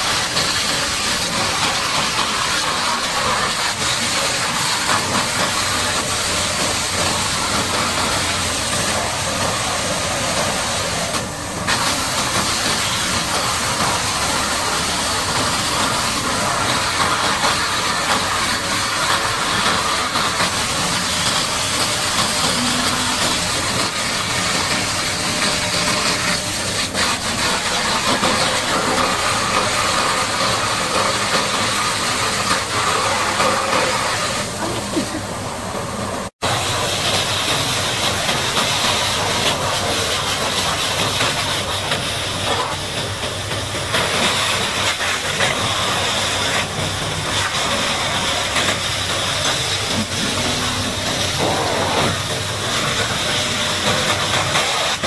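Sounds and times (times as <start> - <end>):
engine running: 0.0 - 55.0
high-pressure water spray hissing: 0.0 - 55.0.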